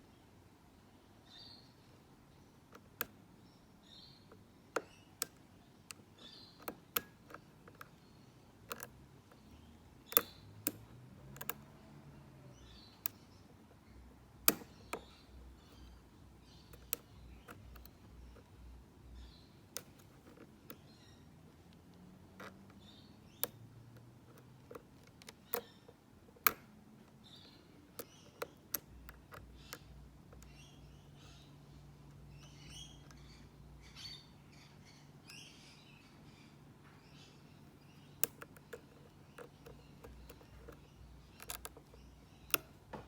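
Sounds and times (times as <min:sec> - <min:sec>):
lock pick clicking in padlock: 0:04.8 - 0:08.0, 0:08.6 - 0:09.5, 0:10.1 - 0:11.7, 0:14.4 - 0:18.5, 0:19.7 - 0:20.8, 0:22.4 - 0:26.8, 0:38.0 - 0:42.9.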